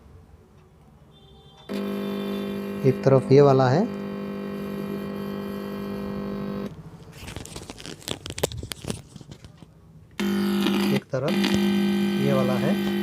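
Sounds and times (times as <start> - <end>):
electrical hum through speaker: 1.7 - 13.0
crackles and clicks: 7.2 - 9.7.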